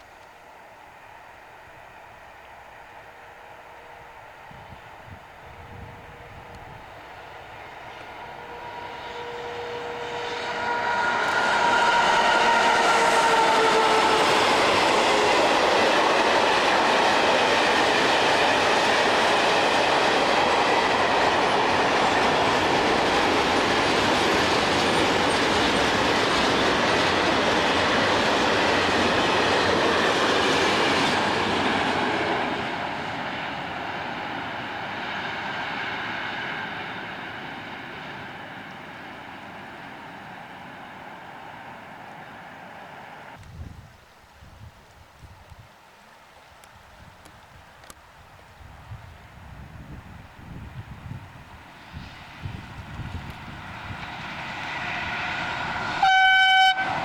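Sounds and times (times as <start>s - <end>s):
train passing on rails: 0.0s - 57.0s
train wheel clatter: 7.7s - 33.8s.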